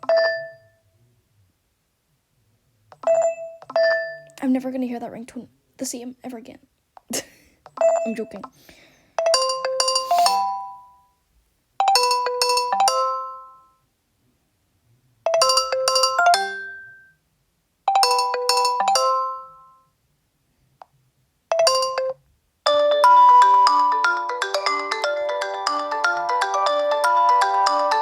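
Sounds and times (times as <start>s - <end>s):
phone ringtone melodies: 9.2s - 11.0s, 11.8s - 13.7s, 15.3s - 17.0s, 17.9s - 19.8s, 21.5s - 28.0s.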